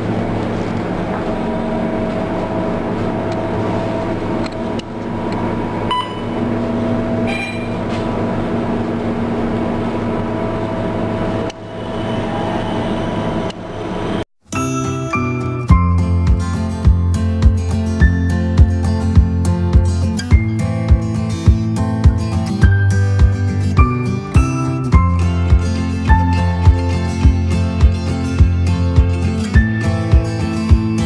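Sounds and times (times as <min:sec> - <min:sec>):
train rumbling: 0:00.0 - 0:14.2.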